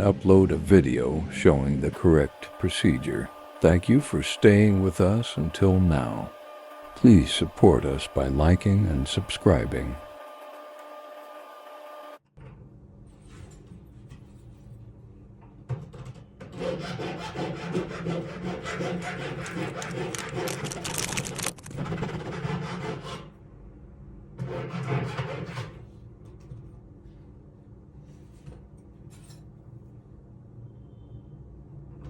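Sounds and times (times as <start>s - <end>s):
hand tool rasping on workpiece: 16.5s - 20.7s.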